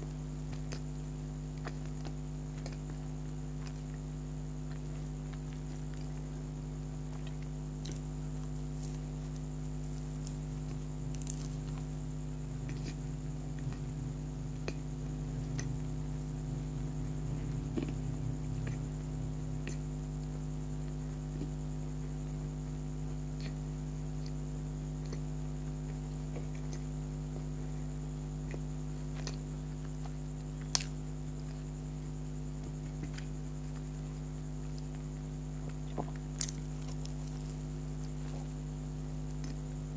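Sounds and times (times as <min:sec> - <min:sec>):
steady electrical hum: 0:00.0 - 0:39.9
person chewing wetly: 0:01.6 - 0:20.2, 0:30.0 - 0:31.6, 0:34.7 - 0:38.6.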